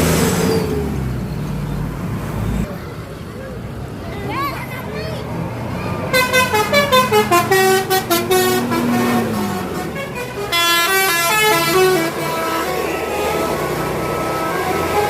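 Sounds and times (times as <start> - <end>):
multi-tone musical bus horn: 6.1 - 15.0.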